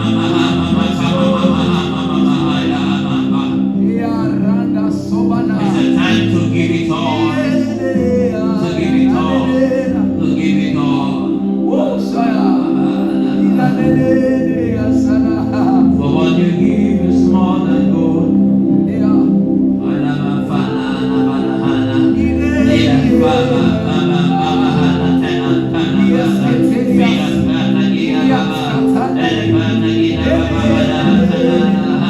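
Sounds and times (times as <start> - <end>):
bass: 0.0 - 32.0
person singing: 0.0 - 32.0
sustained keyboard chords: 0.0 - 32.0.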